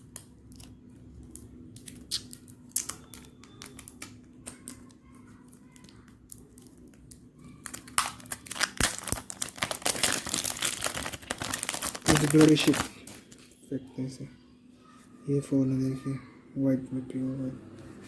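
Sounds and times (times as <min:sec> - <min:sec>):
plastic wrap crinkling: 0:00.0 - 0:13.6.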